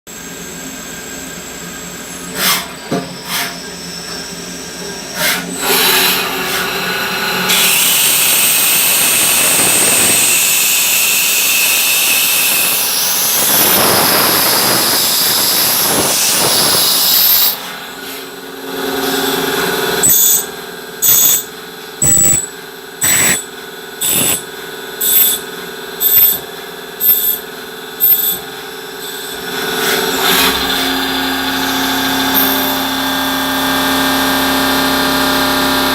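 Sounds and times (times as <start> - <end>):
high-pitched cutting squeal: 11.7 - 18.0, 18.7 - 33.6
machine humming: 13.5 - 35.9
short machine bursts: 19.2 - 28.6.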